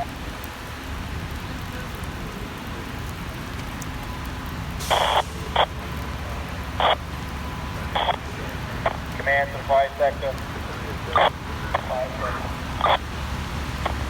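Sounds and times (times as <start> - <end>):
radio scanner hiss and crackle: 3.6 - 14.0
short radio bursts: 4.8 - 5.8, 6.7 - 7.0, 7.9 - 8.2, 8.8 - 14.0.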